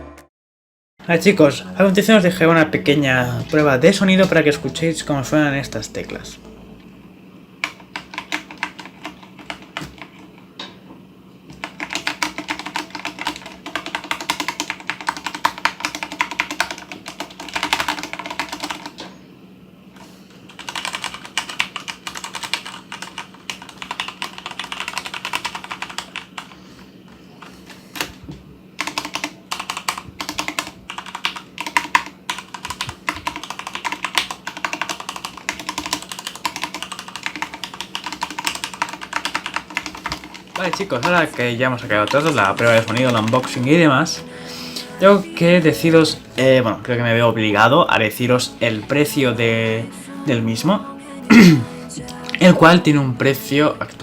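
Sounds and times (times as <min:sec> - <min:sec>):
typing on mechanical keyboard: 0:07.6 - 0:10.3, 0:11.5 - 0:19.0, 0:20.0 - 0:26.6, 0:27.4 - 0:28.2, 0:28.8 - 0:43.8.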